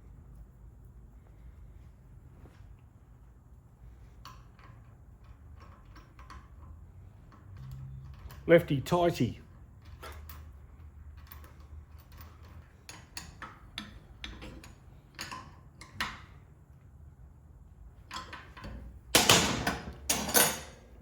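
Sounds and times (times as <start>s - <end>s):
metal tools clicking and knocking: 9.8s - 16.2s, 18.1s - 20.9s
metal parts clattering: 20.1s - 20.8s.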